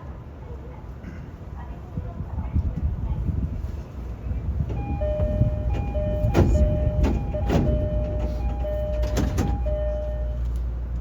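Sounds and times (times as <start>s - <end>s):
low rumble of standing train: 0.0s - 11.0s
two-tone train door chime: 4.7s - 10.6s.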